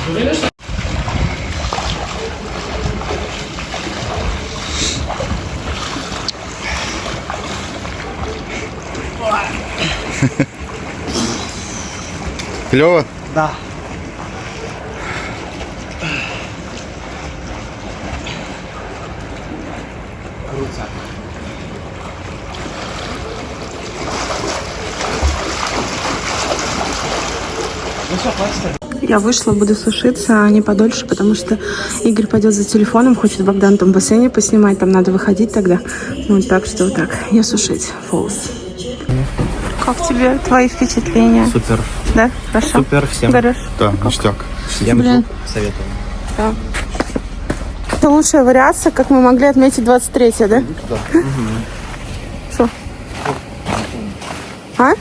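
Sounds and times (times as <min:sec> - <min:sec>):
water lapping and splashing: 0:00.0 - 0:38.4, 0:39.1 - 0:55.0
wind: 0:00.0 - 0:55.0
wind buffeting microphone: 0:00.6 - 0:07.5, 0:39.1 - 0:55.0.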